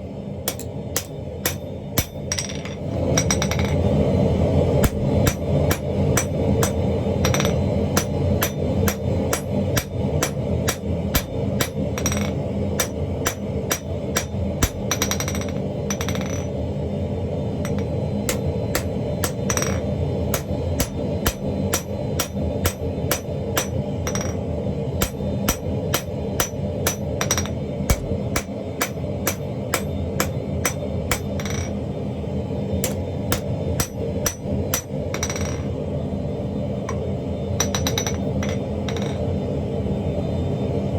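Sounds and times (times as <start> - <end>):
hammer blows on anvil: 0.5 - 3.8, 4.8 - 16.5, 17.6 - 24.4, 25.0 - 31.8, 32.8 - 35.7.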